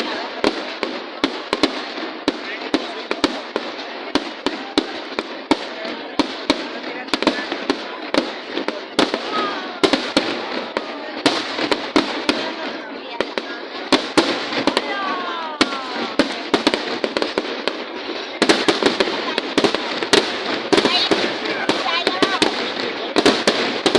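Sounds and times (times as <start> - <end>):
crowd voices: 0.0 - 23.9
fireworks bangs and crackles: 0.0 - 23.9.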